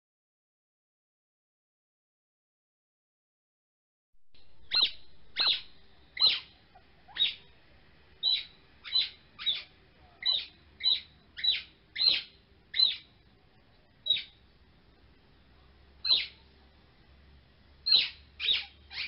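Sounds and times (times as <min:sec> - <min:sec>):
bird chirping: 0:04.4 - 0:14.5, 0:16.0 - 0:16.5, 0:17.8 - 0:19.0.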